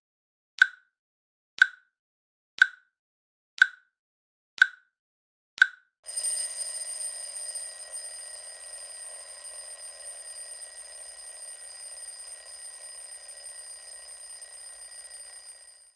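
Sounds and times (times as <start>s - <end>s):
timer click: 5.6s - 15.9s
timer alarm ringing: 6.1s - 15.9s.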